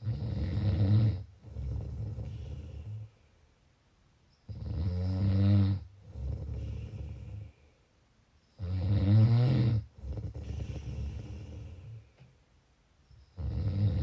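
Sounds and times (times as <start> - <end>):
person snoring: 4.5 - 7.5, 8.6 - 12.0, 13.4 - 14.0.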